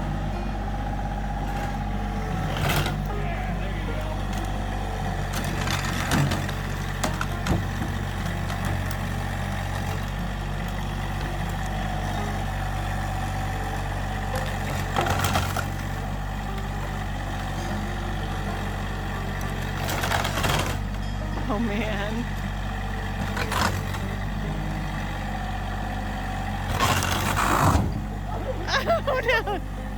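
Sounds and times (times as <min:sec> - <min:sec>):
vehicle engine idling: 0:00.0 - 0:29.9
timber cracking and breaking: 0:05.2 - 0:12.6, 0:14.3 - 0:16.0, 0:19.3 - 0:21.0, 0:23.2 - 0:24.1, 0:26.7 - 0:28.0.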